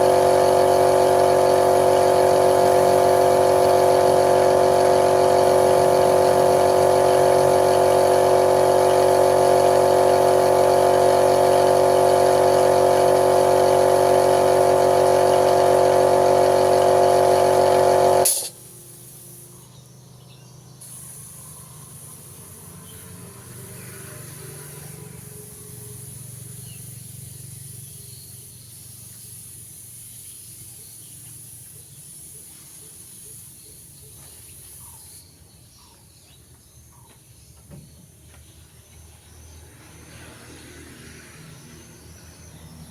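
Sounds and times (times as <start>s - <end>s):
electric motor machine humming: 0.0s - 18.6s.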